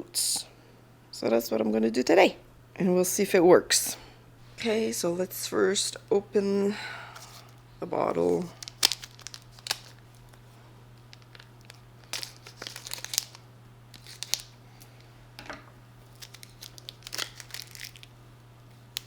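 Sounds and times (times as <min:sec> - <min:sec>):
plastic wrapping crinkling and tearing: 0:08.2 - 0:15.0, 0:16.0 - 0:18.2.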